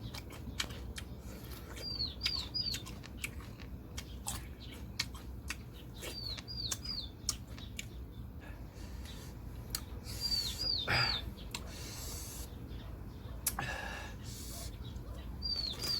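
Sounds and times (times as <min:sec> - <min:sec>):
person chewing crisp fruit: 0:00.0 - 0:12.6, 0:13.3 - 0:14.7
small bird chirping: 0:00.0 - 0:13.6, 0:14.2 - 0:15.9.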